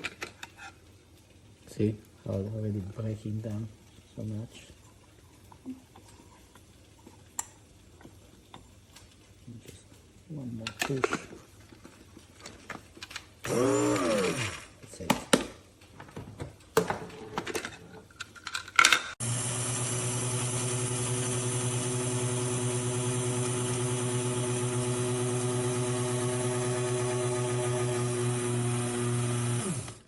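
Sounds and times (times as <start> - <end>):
coffee grinder motor whirring: 13.4 - 14.7, 19.2 - 30.0.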